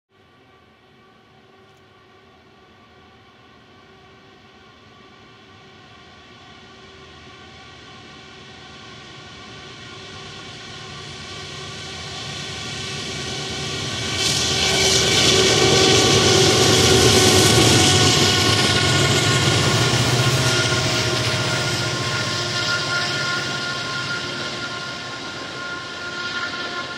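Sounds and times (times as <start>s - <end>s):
diesel locomotive engines: 0.6s - 26.9s.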